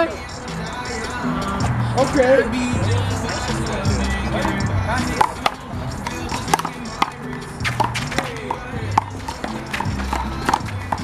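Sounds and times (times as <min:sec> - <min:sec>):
music: 0:00.0 - 0:11.0.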